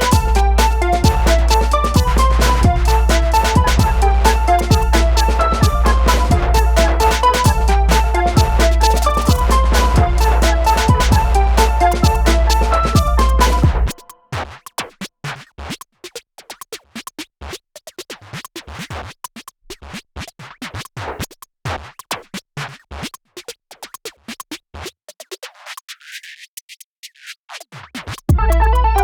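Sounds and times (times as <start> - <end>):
electronic music beat with bass: 0.0 - 14.1, 28.3 - 29.0
rapid scratch-like clicks: 0.0 - 28.3.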